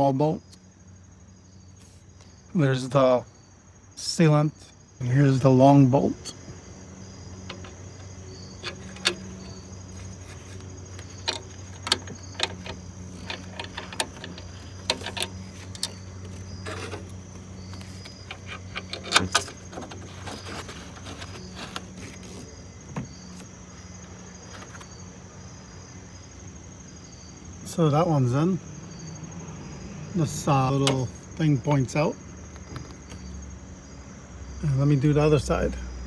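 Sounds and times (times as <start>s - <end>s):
crickets chirping: 0.0s - 36.0s
metal tools clicking and tapping: 7.4s - 21.9s.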